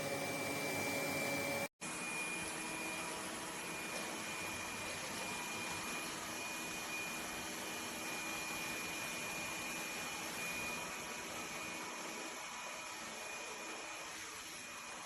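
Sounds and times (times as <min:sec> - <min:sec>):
robot vacuum whirring: 0:00.0 - 0:07.4.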